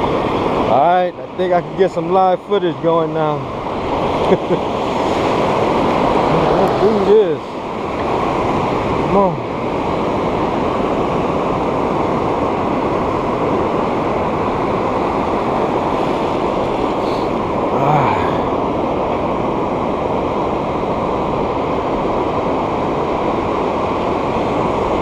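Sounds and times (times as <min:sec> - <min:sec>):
ocean surf breaking: 0:00.0 - 0:25.0
wind noise on microphone: 0:03.1 - 0:17.8
man's voice murmuring: 0:17.1 - 0:18.6.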